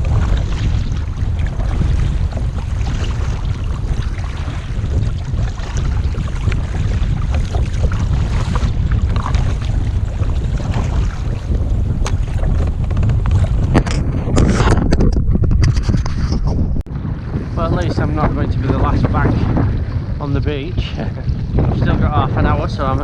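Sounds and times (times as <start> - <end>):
paddle splashes in water: 0.0 - 16.3
wind buffeting microphone: 0.0 - 23.0.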